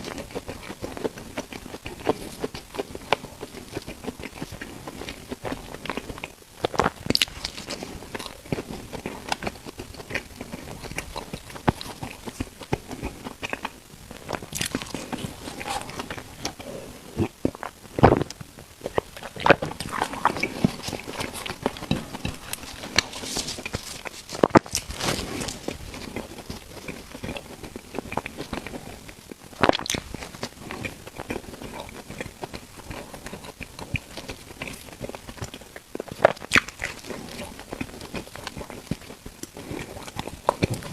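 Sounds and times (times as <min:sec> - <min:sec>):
chewing bread: 0:00.0 - 0:40.9.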